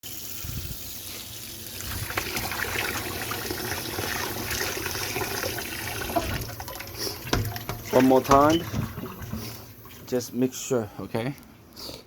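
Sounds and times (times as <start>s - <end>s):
tap water running and splashing: 0.0s - 10.2s.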